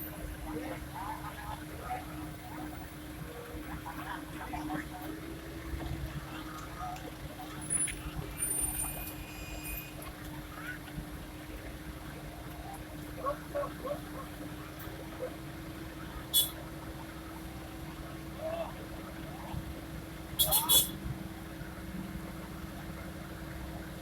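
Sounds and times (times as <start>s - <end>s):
faint voices: 0.0s - 24.0s.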